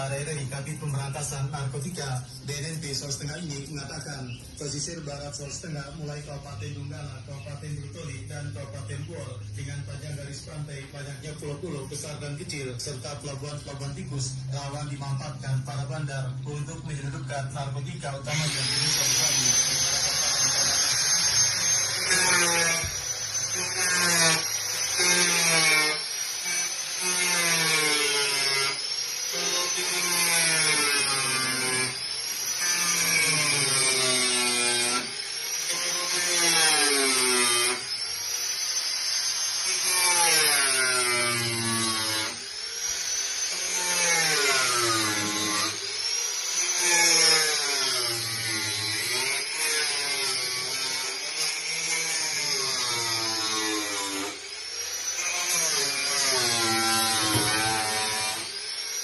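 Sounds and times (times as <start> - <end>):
electric power tool running: 18.3 - 59.0.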